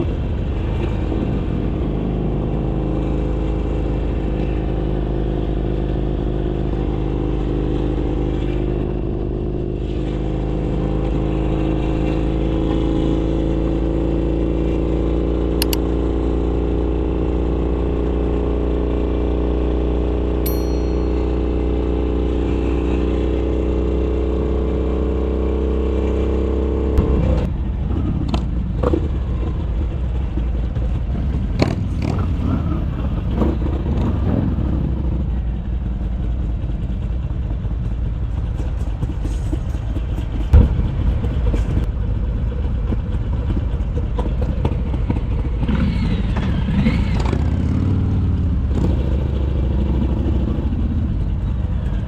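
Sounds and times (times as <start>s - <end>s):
motorcycle engine cruising: 0.0s - 52.0s
engine clicks and knocks: 35.9s - 47.4s.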